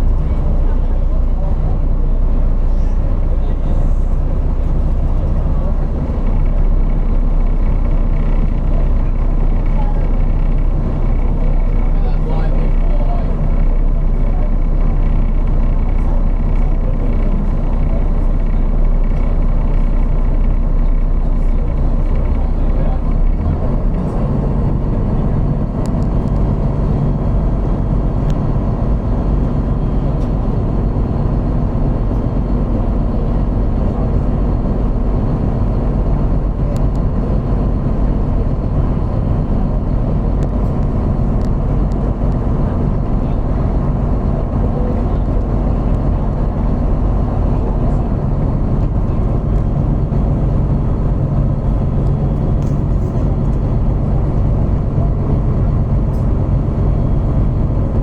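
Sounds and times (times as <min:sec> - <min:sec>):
vehicle engine and road rumble: 0:00.0 - 0:58.0.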